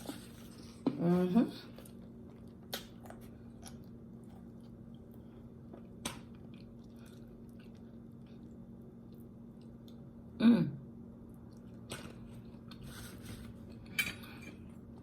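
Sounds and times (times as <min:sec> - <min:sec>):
low background hum: 0:00.0 - 0:15.0
person chewing food: 0:01.7 - 0:10.1, 0:11.3 - 0:12.9.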